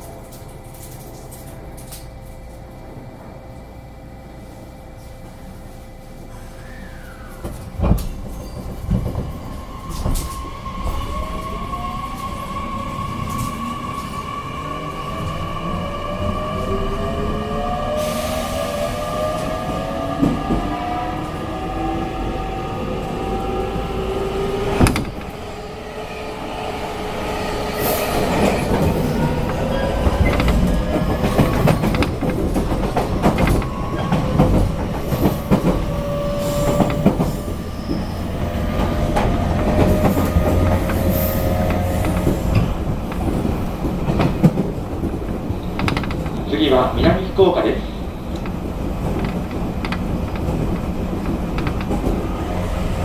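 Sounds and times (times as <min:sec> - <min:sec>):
wheels clicking over rail joints: 0:28.2 - 0:37.4, 0:38.7 - 0:53.0.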